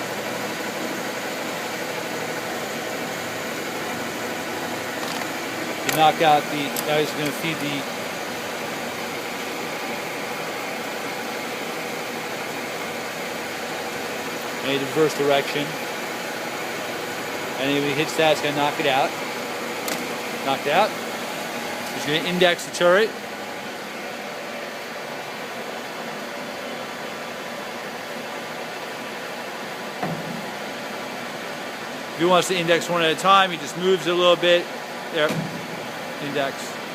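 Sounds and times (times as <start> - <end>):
lathe running: 0.0 - 24.7.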